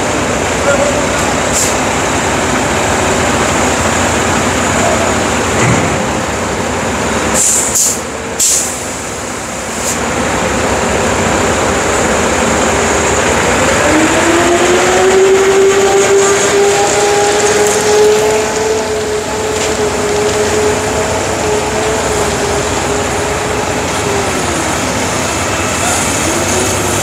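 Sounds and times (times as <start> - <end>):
concrete mixer truck running: 0.0 - 27.0
short air hisses: 7.4 - 9.0
rising whine: 10.1 - 27.0.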